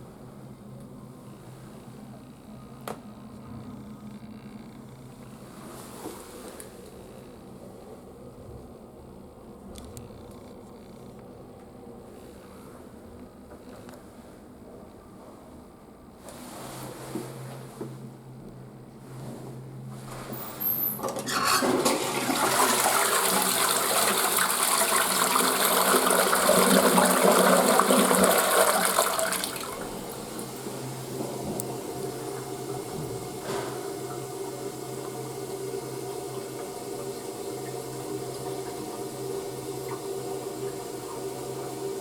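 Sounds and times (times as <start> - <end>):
faint hum: 0.0 - 42.0
toilet flushing: 20.3 - 42.0
water running: 21.3 - 42.0.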